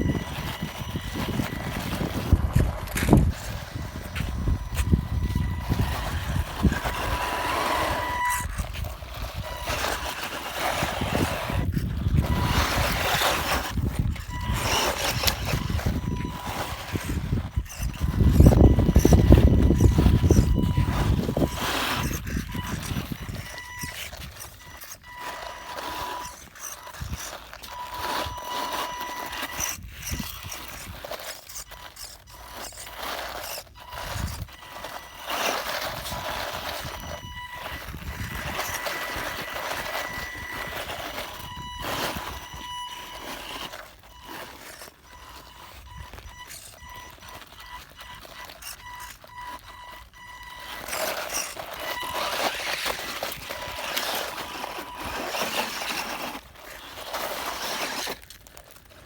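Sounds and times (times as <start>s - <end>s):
electric motor whining: 0.0s - 57.1s
tyres scrabbling on soil: 0.0s - 59.0s.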